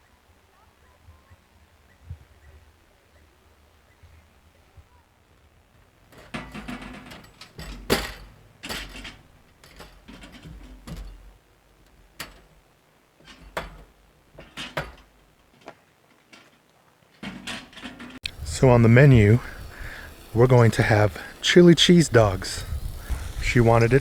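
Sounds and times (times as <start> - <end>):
rustling: 4.8 - 24.0
knocks and clicks of handling: 13.2 - 18.3.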